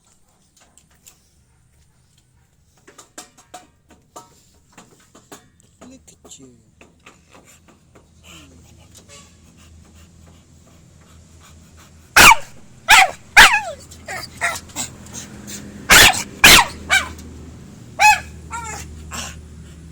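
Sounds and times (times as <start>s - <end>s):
dog barking and yelping: 12.2s - 17.3s, 17.9s - 19.9s.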